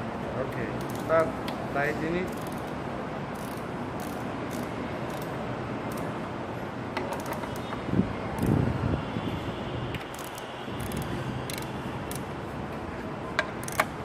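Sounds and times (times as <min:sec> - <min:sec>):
ratchet wrench clicks: 0:00.8 - 0:01.6, 0:02.2 - 0:06.1, 0:10.0 - 0:12.3, 0:13.4 - 0:14.0.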